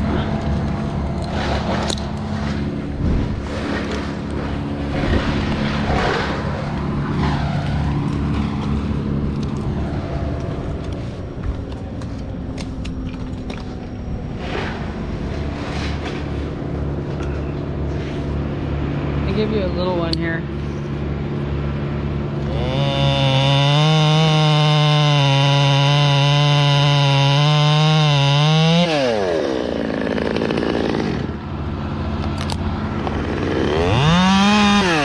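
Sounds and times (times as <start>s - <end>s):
engine running steadily: 0.0s - 24.7s, 28.9s - 35.0s.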